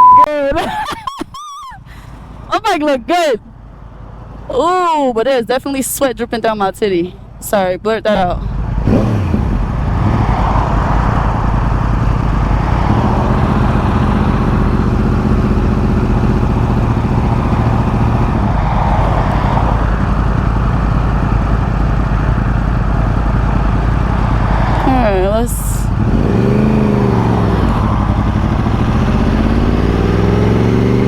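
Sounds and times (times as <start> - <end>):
motorcycle engine hum: 1.8 - 31.0
wind rush: 8.5 - 31.0.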